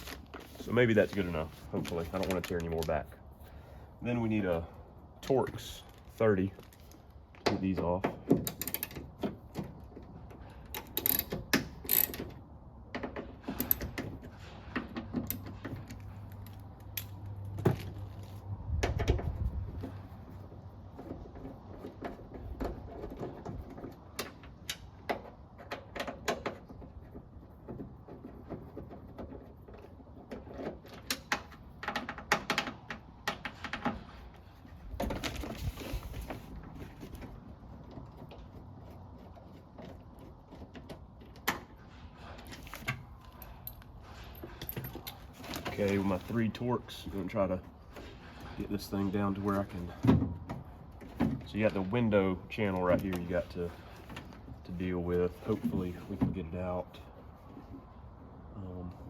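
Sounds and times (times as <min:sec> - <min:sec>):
hand tool loosening screws: 0:10.4 - 0:12.4, 0:13.0 - 0:17.2.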